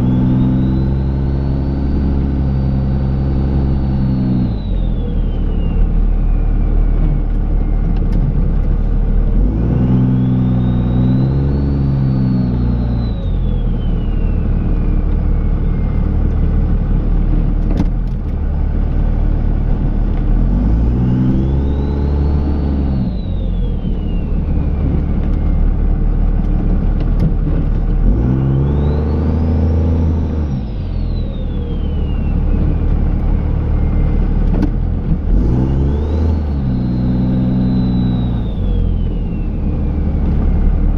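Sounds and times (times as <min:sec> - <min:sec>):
turbo whistle: 0:00.0 - 0:07.9, 0:09.6 - 0:16.6, 0:20.9 - 0:25.7, 0:28.2 - 0:34.3, 0:35.4 - 0:40.7
diesel engine revving: 0:00.0 - 0:40.9.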